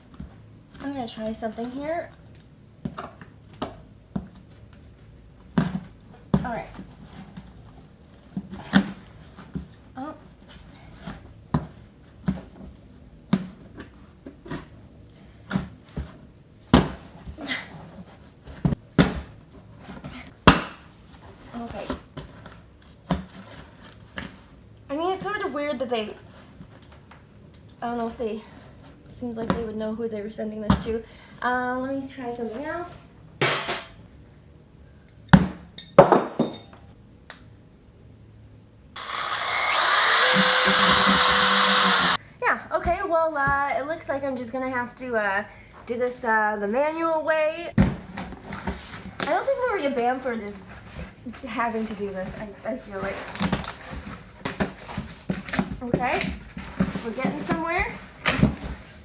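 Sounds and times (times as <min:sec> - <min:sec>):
electric motor whining: 0:39.0 - 0:42.2.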